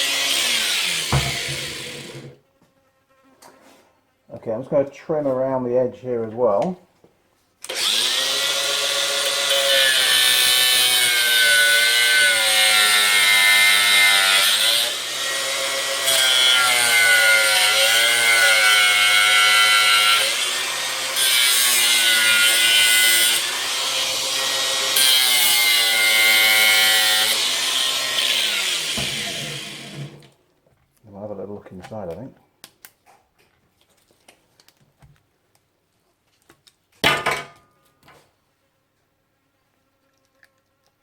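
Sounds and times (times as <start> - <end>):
small power tool cutting plastic: 0.0 - 2.4, 7.6 - 30.3.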